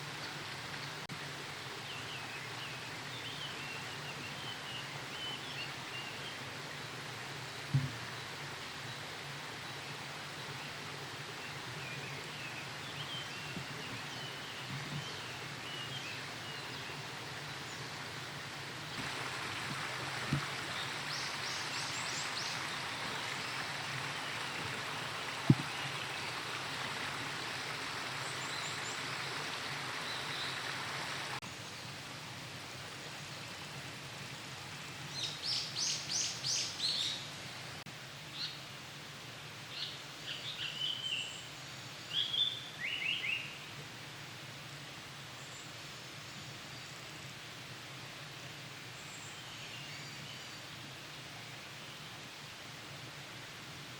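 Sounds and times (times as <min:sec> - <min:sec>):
background hiss: 0:00.0 - 0:53.9
forest birdsong: 0:01.6 - 0:32.0, 0:34.8 - 0:38.7, 0:39.7 - 0:43.8, 0:45.3 - 0:47.4, 0:48.6 - 0:52.3.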